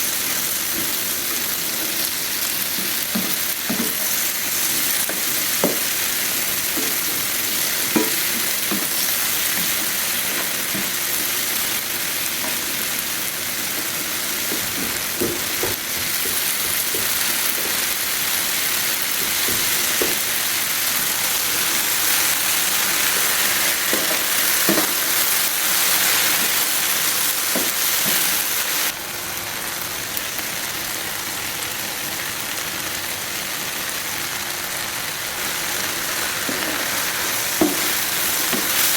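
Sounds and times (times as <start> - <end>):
vegetables sizzling in oil: 0.0 - 38.9
stirring knocks: 7.9 - 11.4, 13.7 - 18.0, 37.6 - 38.9.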